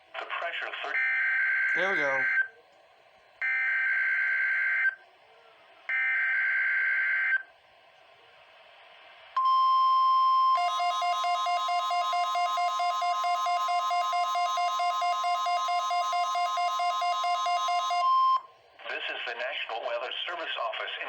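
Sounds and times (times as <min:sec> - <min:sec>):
steady alarm tone: 0:10.6 - 0:18.4.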